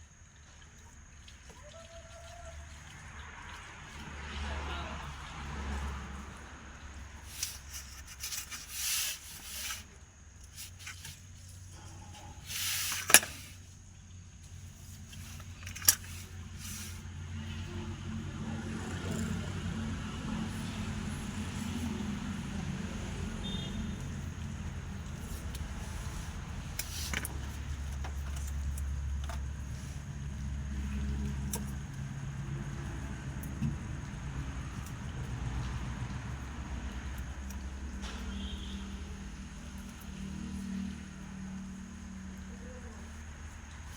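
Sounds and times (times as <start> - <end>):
rustles and clicks of wiring: 7.2 - 11.7, 24.9 - 29.8.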